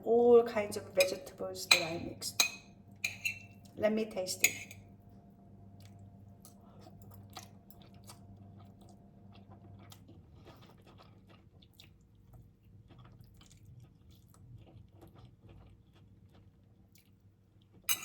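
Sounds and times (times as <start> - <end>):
low steady hum: 0.0 - 18.0
chewing noodles: 5.8 - 17.9.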